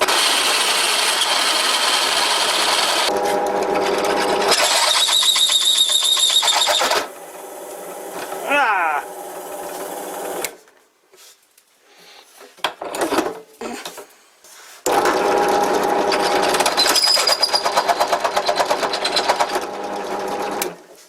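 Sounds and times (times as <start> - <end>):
power tool running loudly: 0.0 - 5.2, 14.9 - 17.0.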